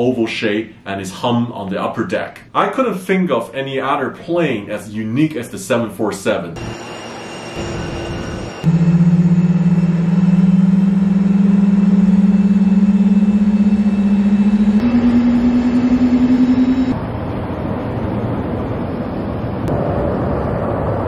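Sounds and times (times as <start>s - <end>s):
jet engines droning: 6.1s - 21.0s.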